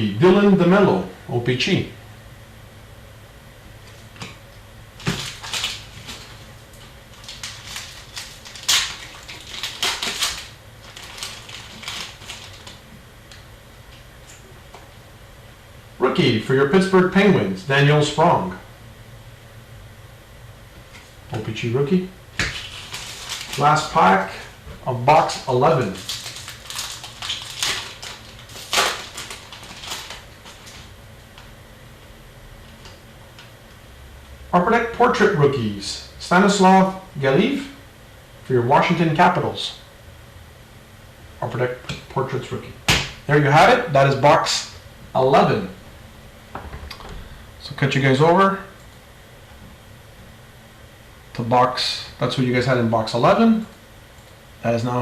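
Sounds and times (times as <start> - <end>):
cards rustling: 5.0 - 12.9, 22.4 - 24.6, 25.3 - 30.9
foil wrappers crinkling: 5.0 - 13.4, 22.4 - 31.0.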